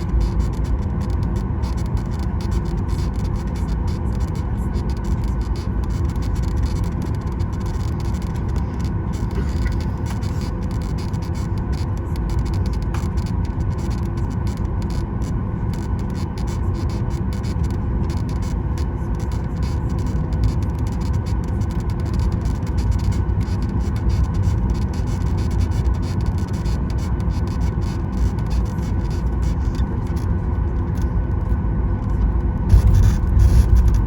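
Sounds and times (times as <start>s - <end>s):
aircraft cabin rumble: 0.0s - 15.7s, 27.7s - 34.0s
jet engine whine: 29.1s - 34.0s.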